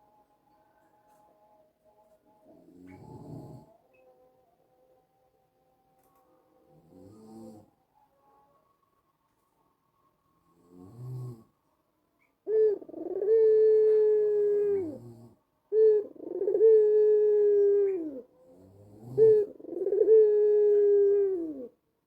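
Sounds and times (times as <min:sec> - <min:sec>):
dove cooing: 0:02.4 - 0:03.7, 0:12.4 - 0:21.8.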